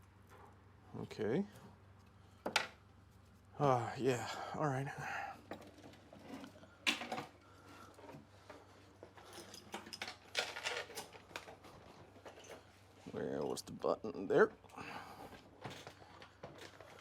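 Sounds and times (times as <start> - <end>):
metal tools clinking and rattling: 8.0 - 12.8.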